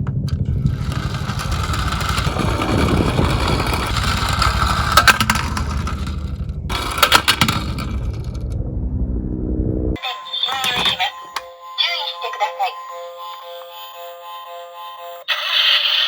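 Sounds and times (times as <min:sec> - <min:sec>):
toy car wheels rattling: 0:00.3 - 0:08.6.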